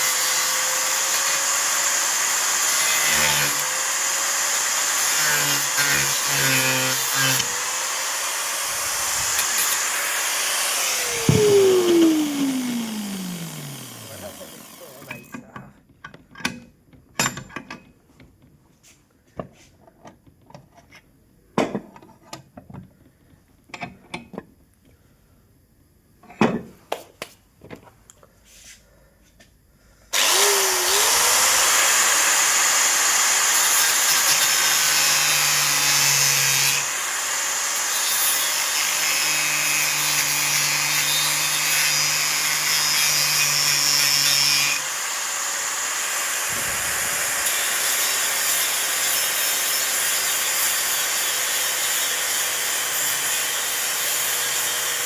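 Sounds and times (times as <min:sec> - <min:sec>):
angle grinder cutting acrylic: 0:00.0 - 0:15.3, 0:30.1 - 0:55.0.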